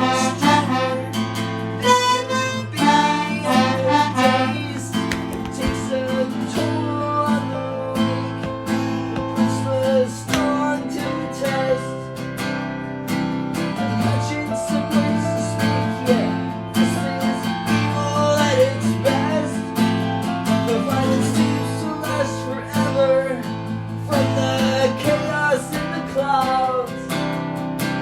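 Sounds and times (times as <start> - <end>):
bending lead melody: 0.0 - 21.8
acoustic guitar strumming: 0.0 - 28.0.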